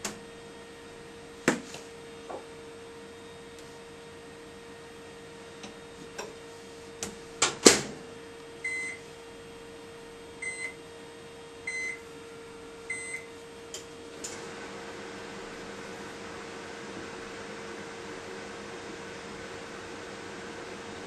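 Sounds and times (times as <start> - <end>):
microwave fan hum: 0.0 - 21.0
short keypad beeps: 8.7 - 9.0, 10.4 - 10.8, 11.7 - 12.0, 12.9 - 13.3.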